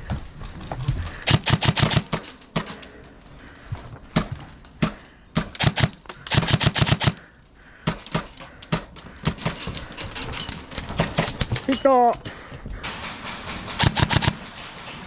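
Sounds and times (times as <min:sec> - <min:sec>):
airsoft guns firing: 0:01.2 - 0:02.9, 0:04.1 - 0:09.8, 0:12.8 - 0:14.6.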